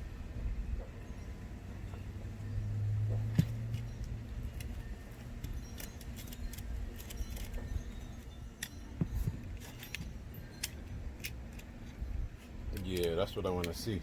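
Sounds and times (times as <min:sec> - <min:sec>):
screwdriver clicking and scraping: 0:03.5 - 0:12.0.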